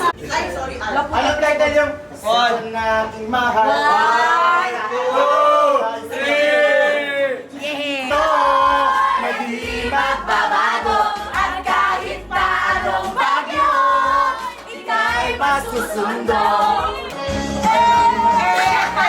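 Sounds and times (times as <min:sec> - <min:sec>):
music with voices singing: 0:08.0 - 0:19.0.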